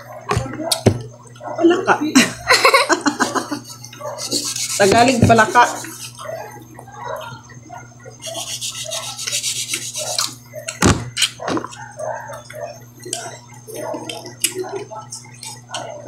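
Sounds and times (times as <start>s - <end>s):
scratchy scraping and rubbing: 4.1s - 6.3s, 8.2s - 10.4s.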